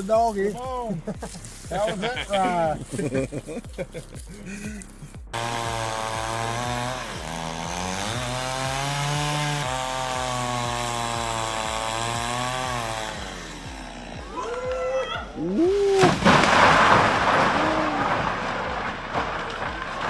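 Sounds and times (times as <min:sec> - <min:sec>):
two-stroke chainsaw engine revving: 0:05.3 - 0:14.4.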